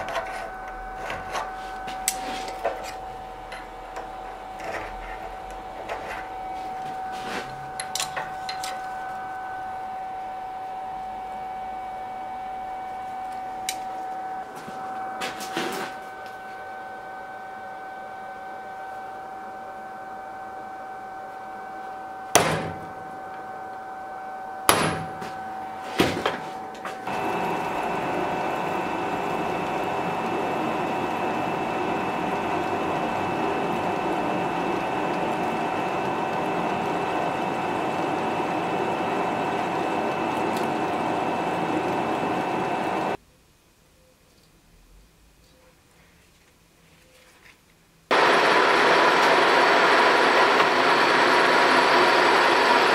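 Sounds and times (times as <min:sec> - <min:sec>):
electric workshop machine humming: 0:00.0 - 0:43.2, 0:48.1 - 0:52.9
power tool grinding metal: 0:27.1 - 0:43.2.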